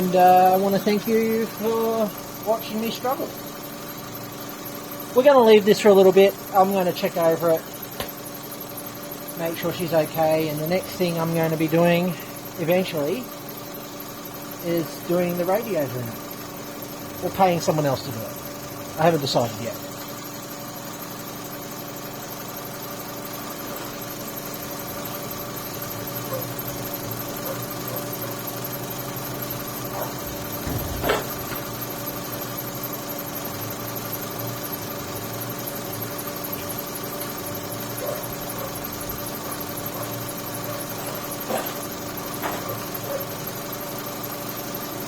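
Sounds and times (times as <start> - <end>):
car engine idling: 0.0 - 45.0
engine knock: 15.2 - 45.0.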